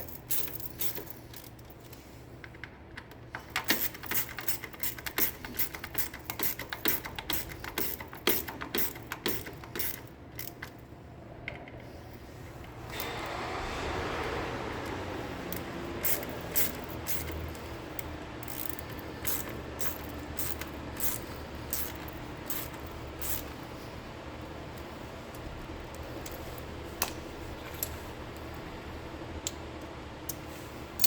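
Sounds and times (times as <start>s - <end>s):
metallic clicks of hand tools: 2.4s - 10.8s, 15.5s - 23.5s.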